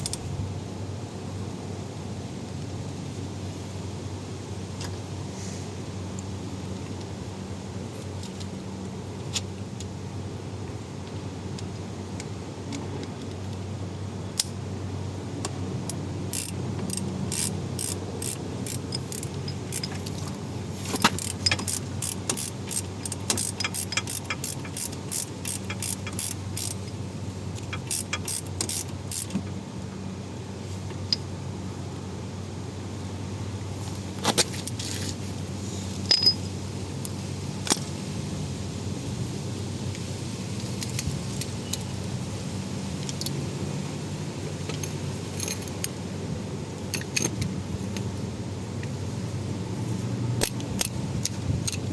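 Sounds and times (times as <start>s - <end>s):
sharp metallic clicks of hand tools: 0.0s - 0.2s, 15.4s - 27.0s, 27.6s - 29.4s, 36.0s - 37.9s, 46.9s - 48.1s, 50.4s - 51.9s
steady low hum: 0.0s - 51.9s
metal clinks: 15.9s - 27.0s, 36.0s - 36.6s, 44.7s - 45.9s.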